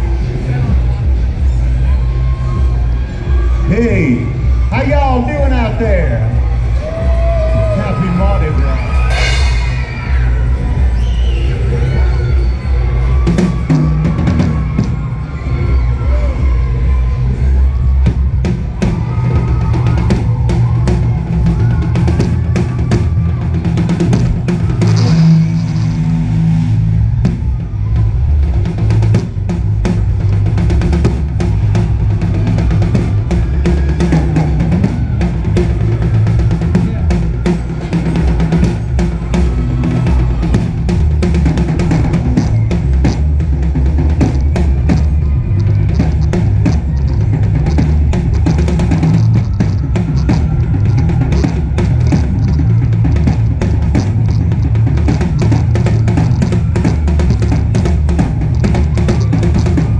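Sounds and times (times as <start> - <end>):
heavy bass notes: 0.0 - 59.9
live band playing: 7.9 - 10.6
drum kit beat: 12.7 - 17.1, 17.9 - 59.9.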